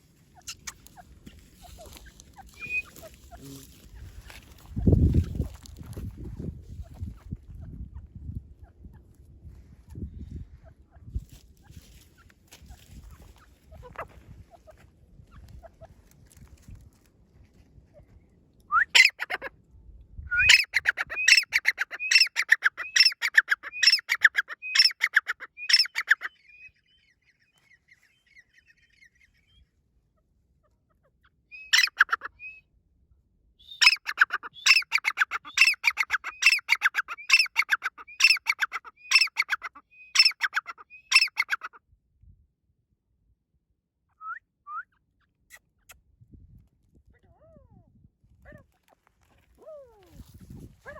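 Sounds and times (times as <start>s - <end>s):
francolin calling: 1.6s - 3.6s, 20.4s - 29.6s, 33.7s - 41.6s.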